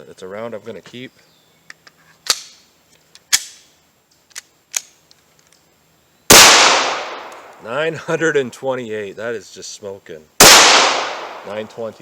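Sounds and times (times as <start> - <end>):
pistol handling clicks: 1.7 - 3.7, 4.3 - 5.6, 6.3 - 7.6
gunshot with echoing tail: 6.3 - 7.5, 10.4 - 11.7.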